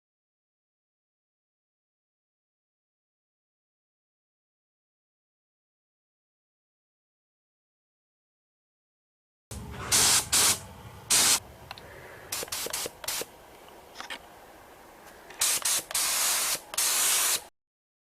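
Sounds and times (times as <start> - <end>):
spray paint bursts: 9.5 - 11.4, 12.3 - 13.3, 15.4 - 17.5.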